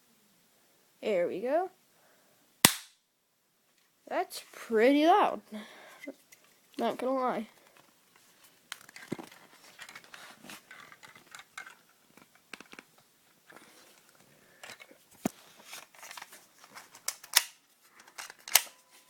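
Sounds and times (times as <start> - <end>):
sharp pistol snaps: 2.6 - 3.0
pistol mechanical clicks and rattles: 16.9 - 18.8.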